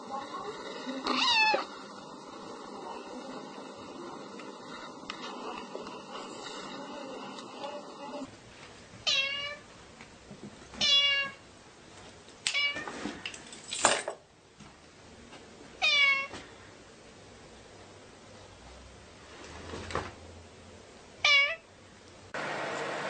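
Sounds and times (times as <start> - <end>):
cat meowing: 1.1 - 1.7, 9.1 - 9.6, 10.8 - 11.4, 15.8 - 16.3, 21.2 - 21.6.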